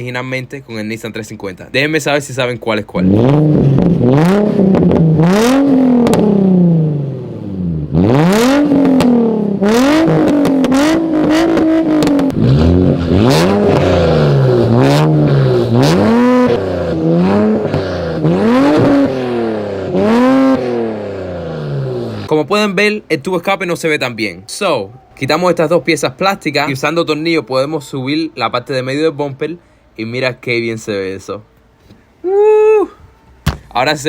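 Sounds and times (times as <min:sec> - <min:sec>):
car engine revving: 0:03.0 - 0:22.3.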